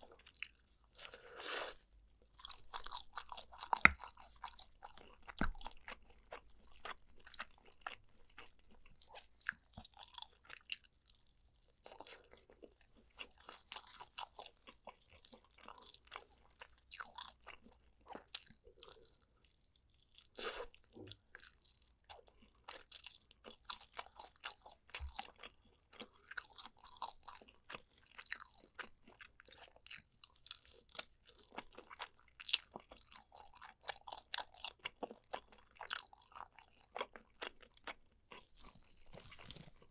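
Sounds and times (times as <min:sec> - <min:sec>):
wet chewing and biting: 0:02.2 - 0:10.9, 0:21.4 - 0:39.9
crisp crunches: 0:38.5 - 0:39.9.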